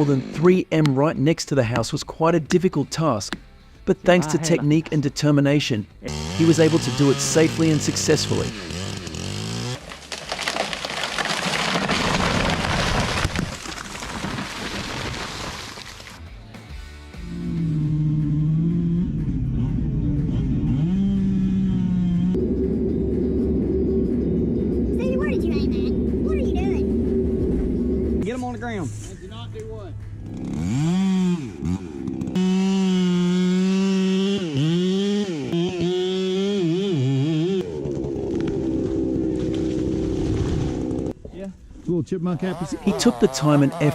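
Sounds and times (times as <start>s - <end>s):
chainsaw engine revving: 0.0s - 0.5s, 6.0s - 16.2s, 17.2s - 22.4s, 30.2s - 41.1s, 42.4s - 43.9s
falling tree branches crashing: 9.6s - 16.2s, 37.9s - 41.1s.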